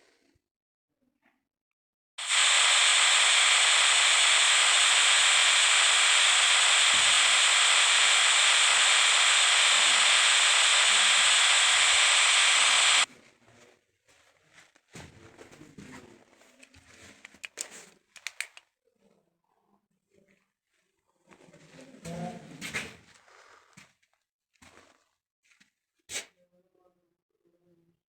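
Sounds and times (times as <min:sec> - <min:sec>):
electronic static hiss: 0:02.2 - 0:13.1.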